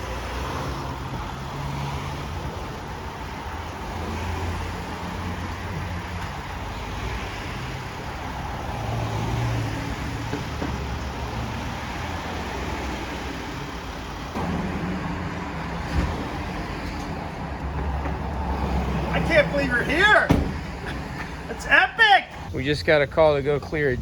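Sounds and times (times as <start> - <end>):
motor vehicle running: 0.0 - 22.5
road noise: 0.0 - 24.0
sharp knock: 20.3 - 21.1.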